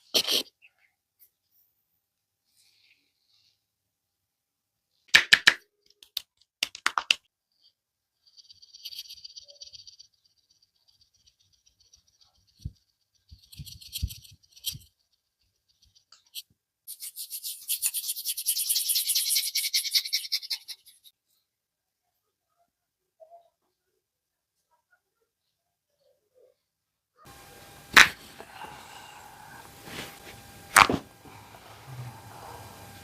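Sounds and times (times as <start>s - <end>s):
hands rubbing hair and skin: 29.5s - 31.0s.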